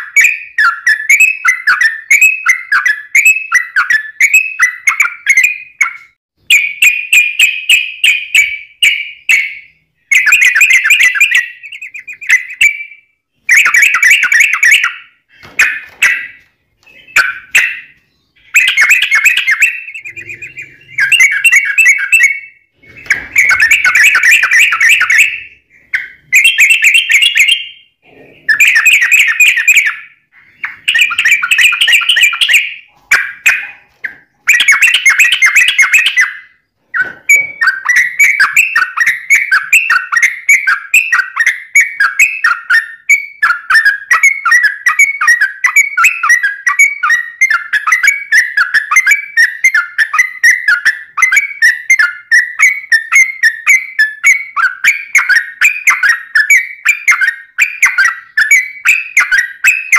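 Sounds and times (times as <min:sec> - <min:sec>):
bird singing bubbling notes: 0:15.6 - 0:40.2.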